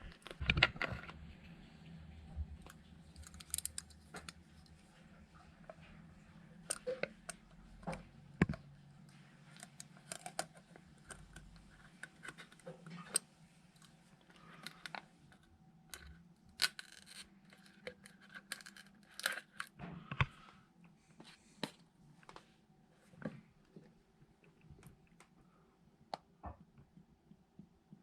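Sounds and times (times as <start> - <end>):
small parts clicking: 2.7 - 4.8, 9.5 - 13.2, 15.9 - 19.7.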